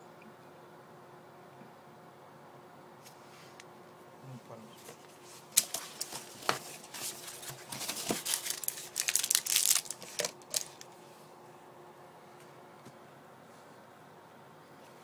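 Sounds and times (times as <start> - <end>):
crinkling rustles: 4.7 - 11.0.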